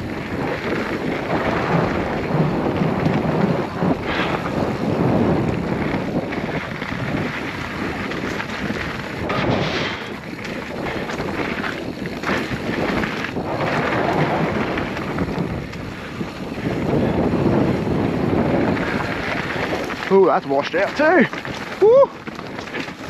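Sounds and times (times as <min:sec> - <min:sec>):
bike rolling over dirt trail: 0:00.0 - 0:23.0
wind on microphone: 0:00.0 - 0:23.0
knocks and rattles from bumps: 0:08.2 - 0:13.2.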